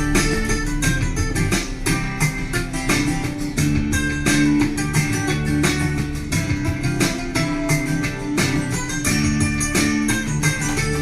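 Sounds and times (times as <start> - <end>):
plucked guitar music: 0.0 - 11.0.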